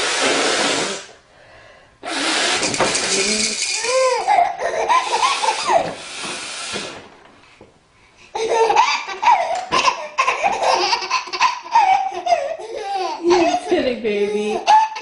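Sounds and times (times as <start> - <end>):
baby laughing: 3.1 - 6.0, 8.3 - 15.0
short breathy hiss: 5.3 - 7.1.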